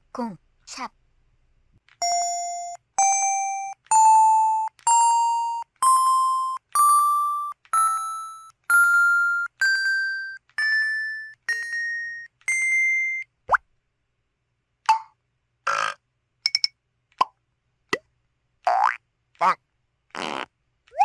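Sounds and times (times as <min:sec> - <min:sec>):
rising electronic keypad beeps: 0:02.0 - 0:12.6.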